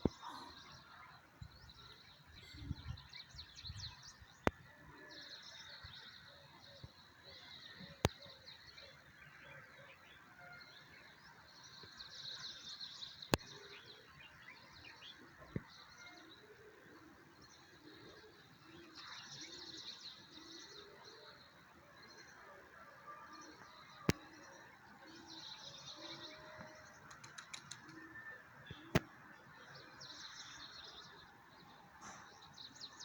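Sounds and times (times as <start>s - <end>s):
small birds chirping: 0.0s - 9.4s, 23.4s - 33.0s
sharp clicks: 27.1s - 27.9s.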